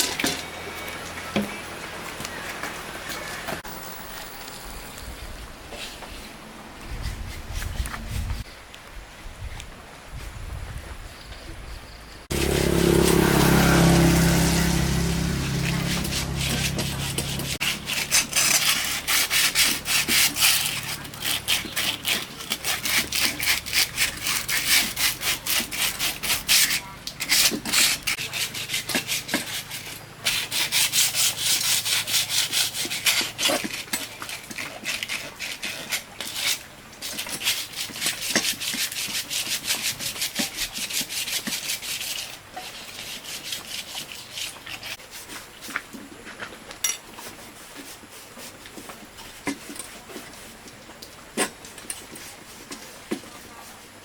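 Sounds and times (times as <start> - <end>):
hand abrasive rasping: 12.3 - 44.9.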